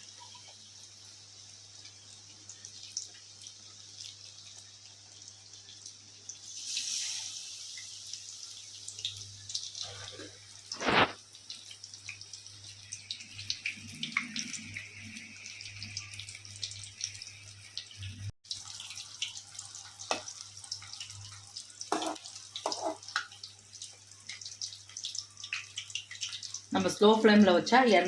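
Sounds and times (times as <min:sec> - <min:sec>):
banana pieces sizzling in hot oil: 0:00.0 - 0:28.0.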